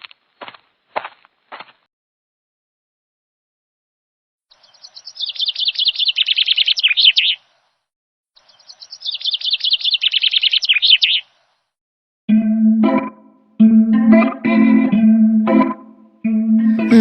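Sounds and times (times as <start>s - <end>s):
songbird singing: 4.5s - 7.7s, 8.4s - 11.6s
music: 12.3s - 17.0s.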